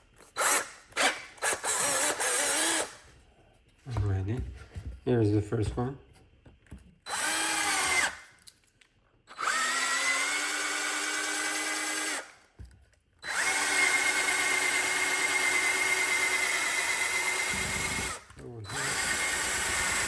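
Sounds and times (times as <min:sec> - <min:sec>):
electric drill whining: 0:00.4 - 0:03.0, 0:07.1 - 0:08.2, 0:09.3 - 0:12.3, 0:13.2 - 0:20.0.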